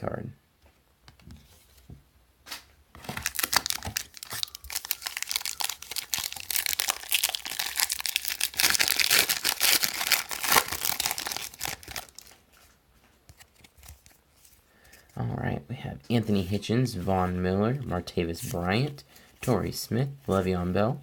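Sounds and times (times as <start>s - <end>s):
wrapper being torn and crinkled: 3.0s - 12.4s.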